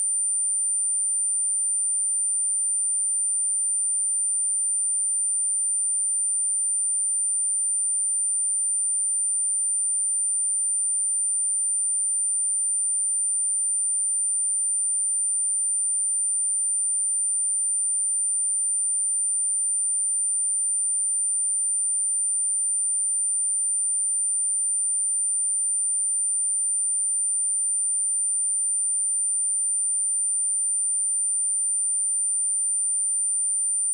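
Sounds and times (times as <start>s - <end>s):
high-pitched sine test tone: 20.8s - 33.9s.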